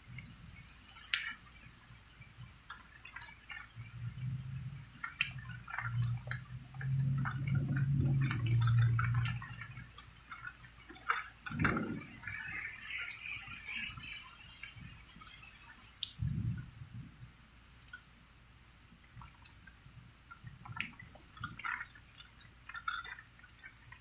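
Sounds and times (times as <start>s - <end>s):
raindrops dripping and pattering: 0.0s - 24.0s
low rumble: 6.6s - 9.7s.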